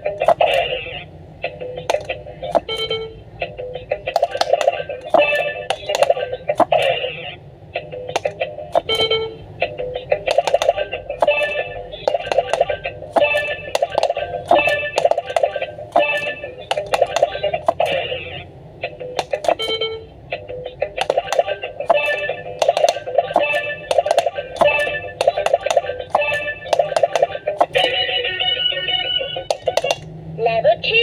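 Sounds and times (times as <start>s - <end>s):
button clicks: 1.8s - 3.0s, 4.1s - 7.0s, 8.1s - 9.2s, 10.2s - 18.0s, 19.2s - 19.8s, 21.0s - 28.0s, 29.4s - 30.1s.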